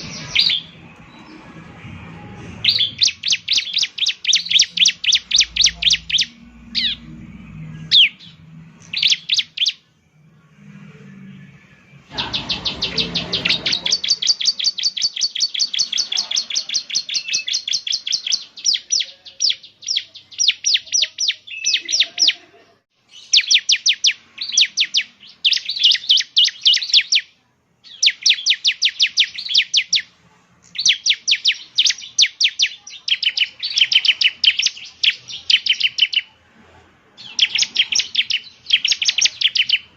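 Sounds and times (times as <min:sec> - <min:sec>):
bird chattering song: 0:00.0 - 0:01.4, 0:02.6 - 0:09.9, 0:12.1 - 0:22.5, 0:23.1 - 0:36.4, 0:37.2 - 0:39.9
low rumble: 0:00.0 - 0:03.2, 0:05.2 - 0:09.0.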